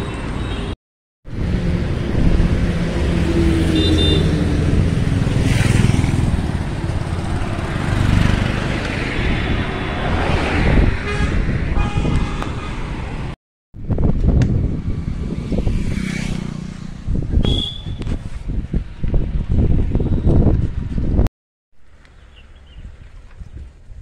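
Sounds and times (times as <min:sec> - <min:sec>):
road traffic noise: 0:00.0 - 0:23.2
vehicle engine: 0:01.3 - 0:11.3
short horn toots: 0:17.4 - 0:18.2.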